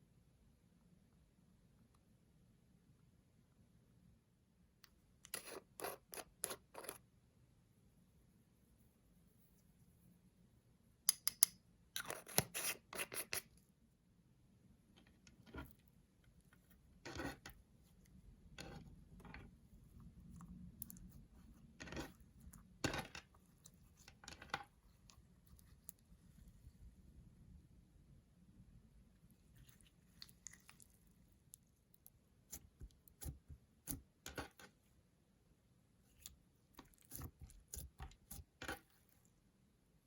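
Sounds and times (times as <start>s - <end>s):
slime clicking and scraping: 5.3s - 7.0s, 29.5s - 34.6s, 36.1s - 39.0s
slime squishing: 29.4s - 34.0s.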